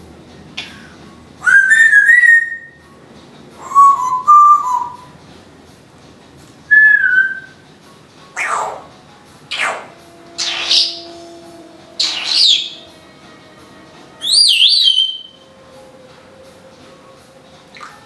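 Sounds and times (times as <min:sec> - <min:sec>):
parrot whistling: 0:00.6 - 0:02.8, 0:03.6 - 0:05.1, 0:06.7 - 0:07.6, 0:08.4 - 0:13.3, 0:14.1 - 0:15.6.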